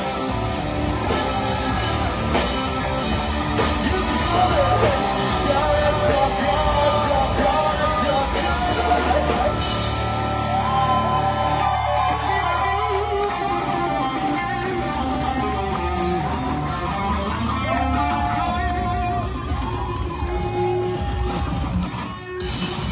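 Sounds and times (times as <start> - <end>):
singer shouting and singing: 0.0 - 15.7
live rock band playing: 0.0 - 22.9.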